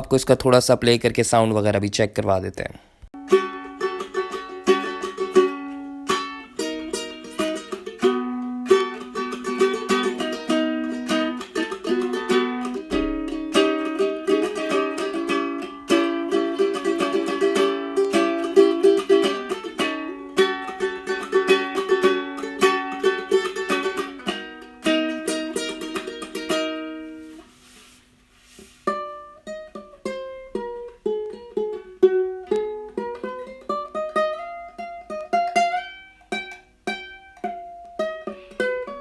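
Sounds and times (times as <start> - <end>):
ukulele plucked melody: 3.2 - 39.0
ukulele strummed chords: 3.2 - 39.0.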